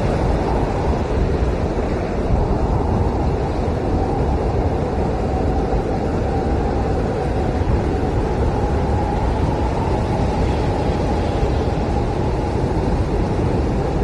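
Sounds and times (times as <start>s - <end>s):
blizzard wind howling: 0.0s - 14.0s.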